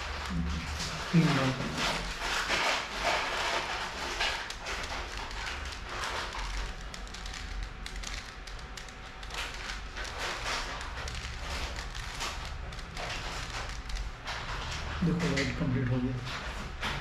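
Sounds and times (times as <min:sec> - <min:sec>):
puzzle cube clicking as turned: 0:03.9 - 0:14.2.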